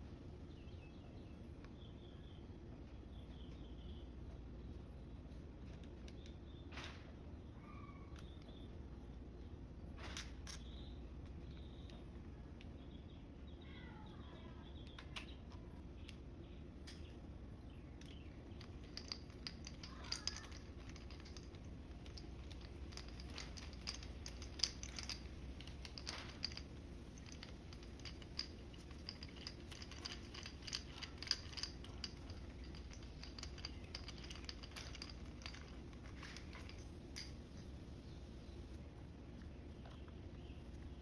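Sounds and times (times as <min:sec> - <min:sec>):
steady low hum: 0:08.2 - 0:41.0.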